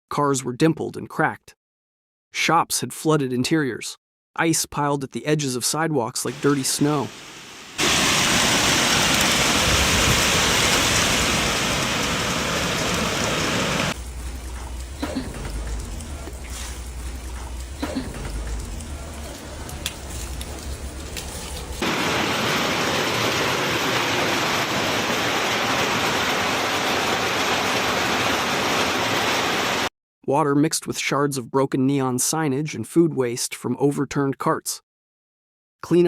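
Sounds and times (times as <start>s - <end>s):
heavy rain on hard surfaces: 6.3s - 29.9s.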